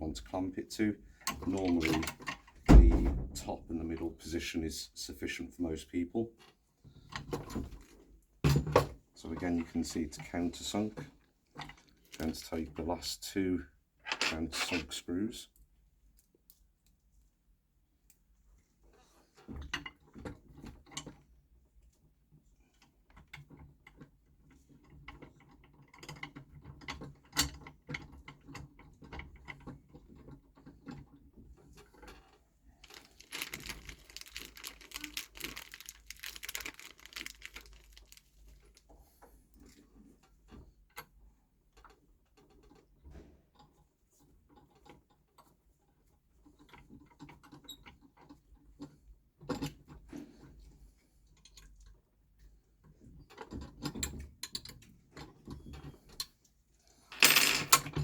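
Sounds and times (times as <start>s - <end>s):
metal parts clicking and rattling: 32.8s - 38.9s, 57.1s - 58.0s.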